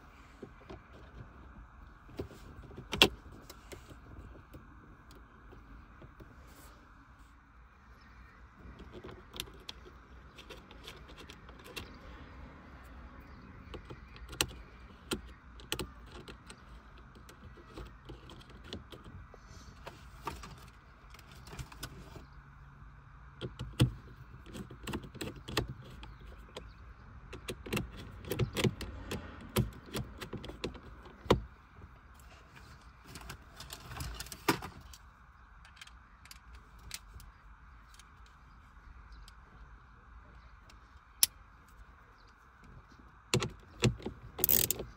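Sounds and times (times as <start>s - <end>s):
faint steady hum: 0.0s - 44.9s
plastic parts clicking and snapping: 40.6s - 44.9s.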